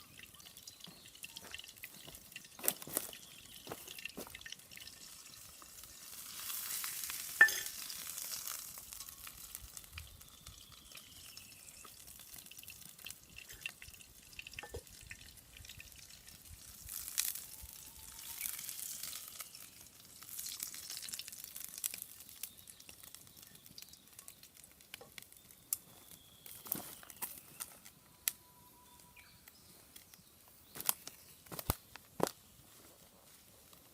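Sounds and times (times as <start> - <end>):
food sizzling in a skillet: 2.7 - 24.4.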